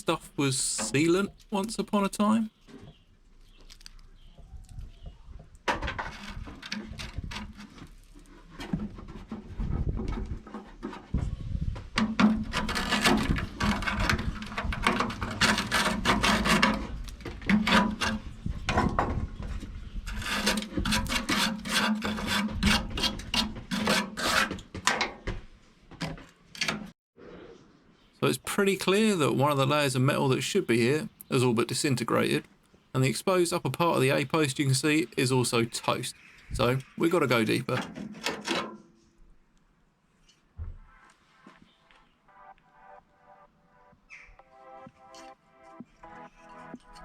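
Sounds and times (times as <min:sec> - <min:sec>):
scraping sealant and rust: 0:00.0 - 0:25.2, 0:36.2 - 0:39.2.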